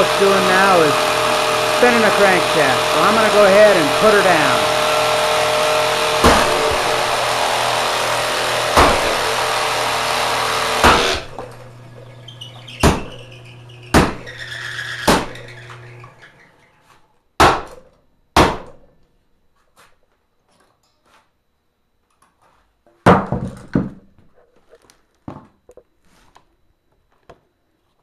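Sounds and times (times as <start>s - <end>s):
sewing machine running with knocks: 0.0s - 16.2s
faint motor hum: 0.0s - 17.0s
loud sharp knocks: 5.4s - 11.3s, 12.8s - 13.2s, 13.9s - 14.3s, 15.0s - 15.4s, 17.4s - 17.8s, 18.4s - 18.8s.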